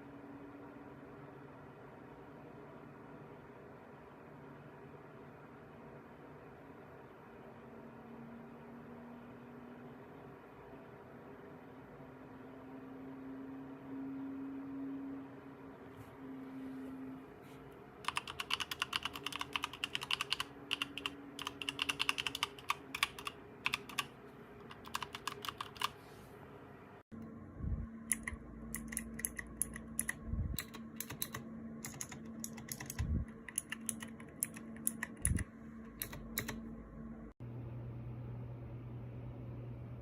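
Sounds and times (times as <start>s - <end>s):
mechanical keyboard key clicks: 28.1s - 35.4s, 36.0s - 36.6s.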